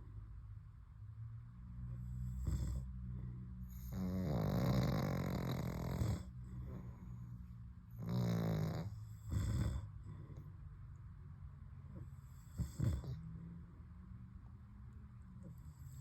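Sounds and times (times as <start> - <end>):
snoring: 2.0 - 3.0, 3.6 - 7.3, 8.0 - 10.3, 12.0 - 13.4.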